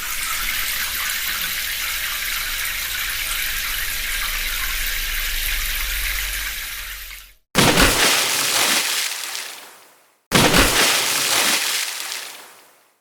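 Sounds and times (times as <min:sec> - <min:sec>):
louder water sound: 0:07.6 - 0:12.8.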